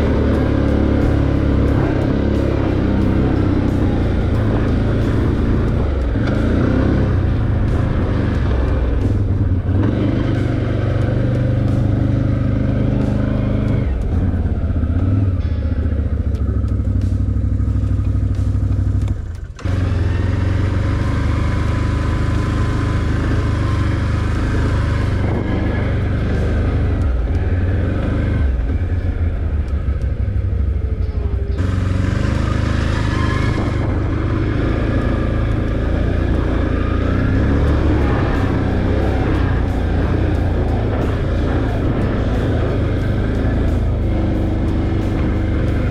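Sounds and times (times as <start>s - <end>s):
atv engine running: 0.0s - 45.9s.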